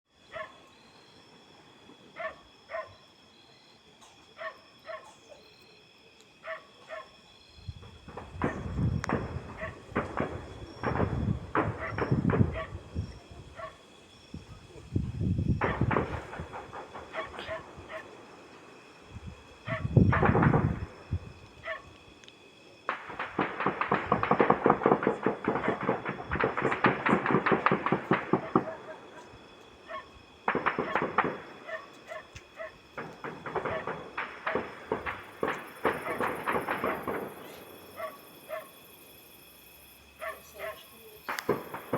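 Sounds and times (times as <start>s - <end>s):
dog barking: 0.3s - 0.7s, 2.2s - 3.0s, 4.0s - 5.4s, 6.4s - 7.2s, 9.6s - 9.8s, 11.8s - 12.8s, 13.5s - 13.8s, 17.1s - 18.2s, 19.7s - 19.9s, 21.6s - 21.9s, 28.4s - 29.3s, 29.9s - 30.1s, 31.6s - 32.8s, 33.6s - 33.9s, 38.0s - 38.8s, 40.2s - 40.9s
rifle shots: 8.1s - 12.8s, 15.6s - 18.1s, 22.9s - 29.0s, 30.4s - 31.7s, 32.9s - 38.0s, 41.3s - 41.9s.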